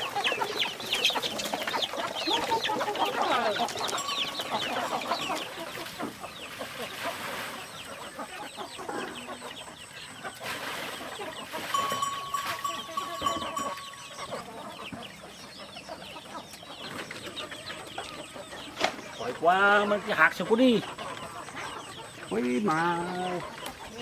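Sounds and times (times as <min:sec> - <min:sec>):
chickens clucking and chirping: 0:00.0 - 0:24.0
steady high tone: 0:11.7 - 0:14.5.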